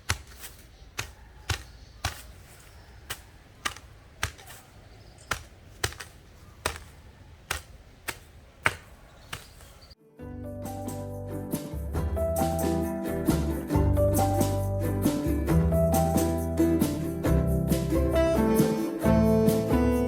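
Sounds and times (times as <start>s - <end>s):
shovel chopping into turf: 0.0s - 9.9s
music: 10.0s - 20.0s.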